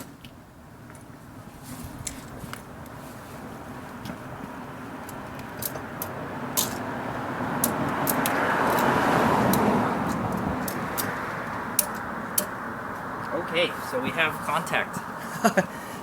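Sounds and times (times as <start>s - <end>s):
vehicle passing: 3.0s - 16.0s
ratchet strap clicking: 5.0s - 6.9s, 7.6s - 12.6s.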